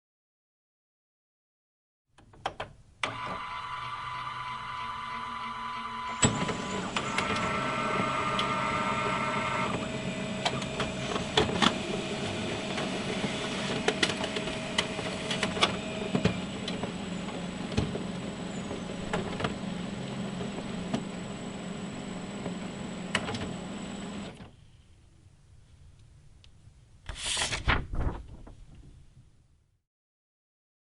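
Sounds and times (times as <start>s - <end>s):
printer motor whirring: 3.0s - 24.4s
printer whining tones: 3.0s - 24.4s
printer clicks: 6.1s - 9.8s.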